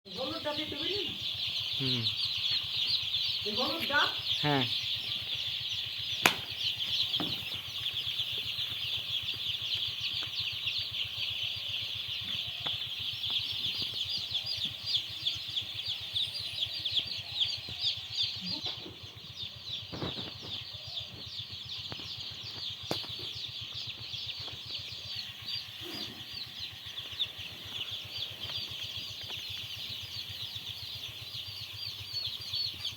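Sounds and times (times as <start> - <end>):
chicks peeping: 0.1 - 32.9
knocks: 7.2 - 7.6.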